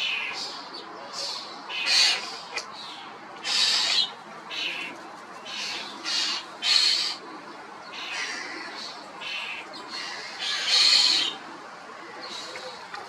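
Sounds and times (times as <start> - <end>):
starling harsh rasping calls: 1.7 - 2.7, 3.4 - 4.9, 5.5 - 7.2.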